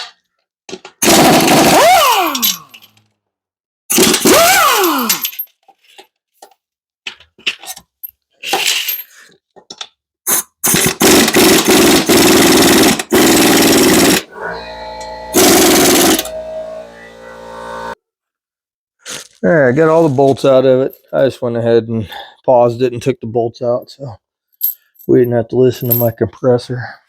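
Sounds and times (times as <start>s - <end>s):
air compressor running: 1.0s - 2.4s, 10.8s - 18.0s
air impact wrench hammering: 1.0s - 2.5s, 3.9s - 5.0s, 10.6s - 14.3s, 15.0s - 16.5s.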